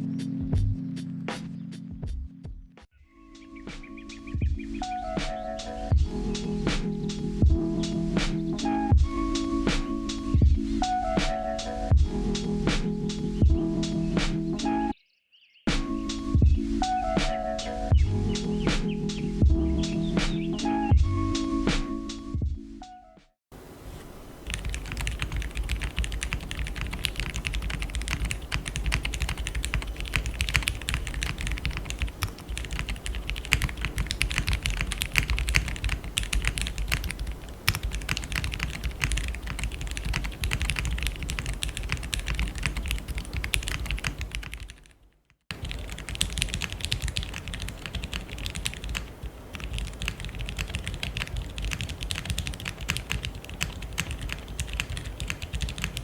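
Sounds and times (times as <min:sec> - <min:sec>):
mechanical keyboard typing: 0:24.4 - 0:44.9, 0:45.5 - 0:56.0.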